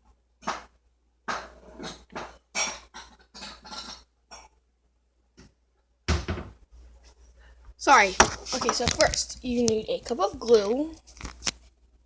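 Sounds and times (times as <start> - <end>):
household items knocking and clattering: 0.4 - 4.1, 6.1 - 6.6, 8.1 - 9.8.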